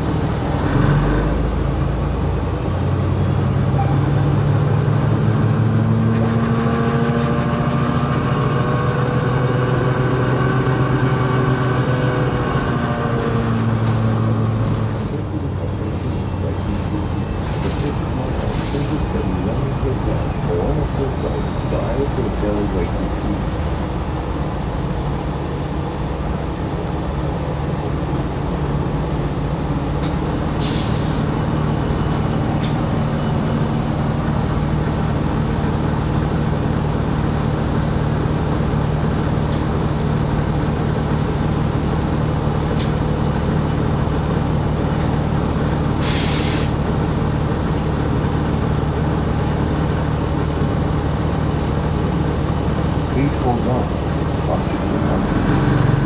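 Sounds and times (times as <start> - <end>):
bus engine drone: 0.0 - 56.0
air brake hisses: 30.5 - 31.3, 46.0 - 46.8.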